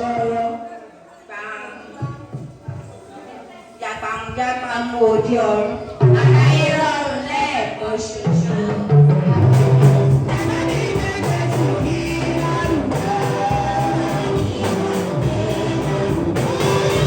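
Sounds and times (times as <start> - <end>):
band music with singing: 8.0 - 17.0
steady bass line: 9.6 - 17.0.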